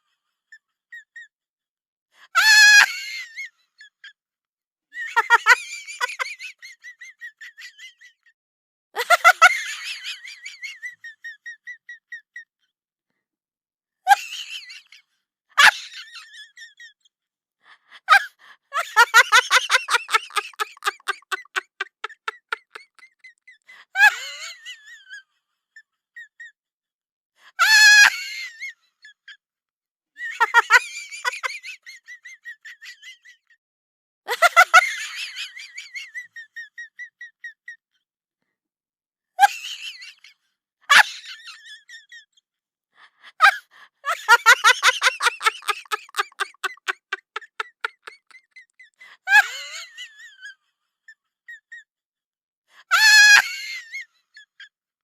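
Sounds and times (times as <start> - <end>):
laughter-like voice bursts: 5.0 - 8.3, 9.0 - 12.5, 17.9 - 25.3, 30.2 - 33.6, 34.3 - 37.8, 43.3 - 50.7.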